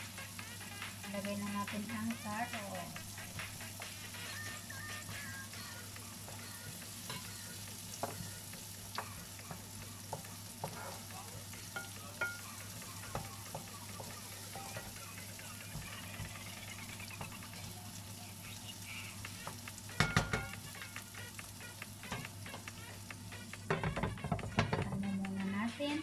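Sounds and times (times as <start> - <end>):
food sizzling in a frying pan: 0.0 - 26.0
spatula scraping a pan: 3.1 - 17.8.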